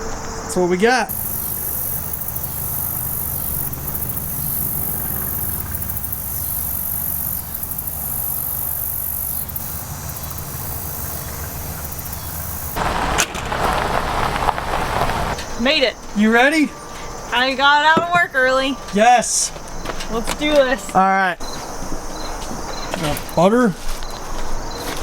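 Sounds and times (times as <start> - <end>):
insects chirping: 0.0 - 25.0
vehicle engine running: 1.1 - 15.4
loud rustling noise: 12.6 - 15.6.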